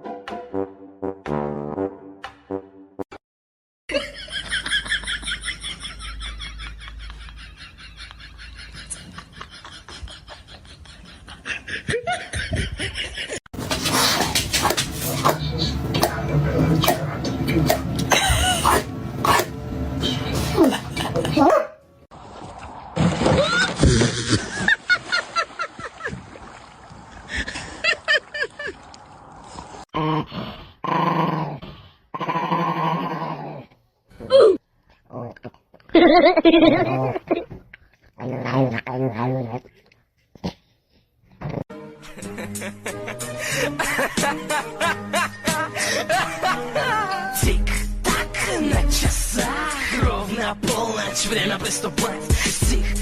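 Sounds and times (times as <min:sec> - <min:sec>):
person laughing: 0:03.9 - 0:13.4, 0:17.5 - 0:18.9, 0:20.1 - 0:21.5, 0:23.2 - 0:26.2, 0:35.9 - 0:37.6, 0:42.0 - 0:47.4.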